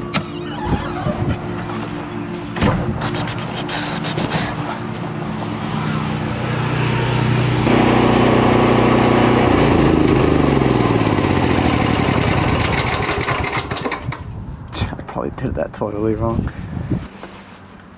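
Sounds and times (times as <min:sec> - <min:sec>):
pressure washer engine running: 0:06.0 - 0:13.8.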